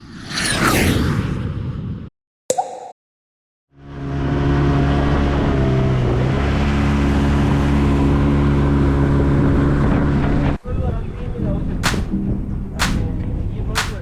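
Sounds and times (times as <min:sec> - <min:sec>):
water noise: 0:02.5 - 0:03.0.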